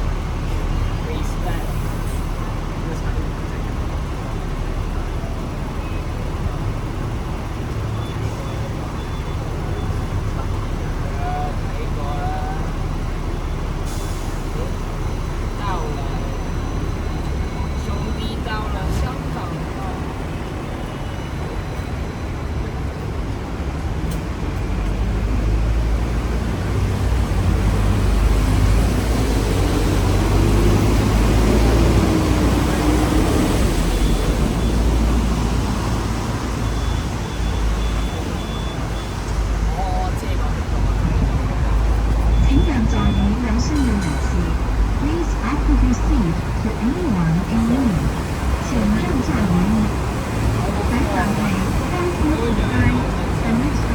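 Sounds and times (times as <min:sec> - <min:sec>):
tram rumbling: 0:00.0 - 0:53.9.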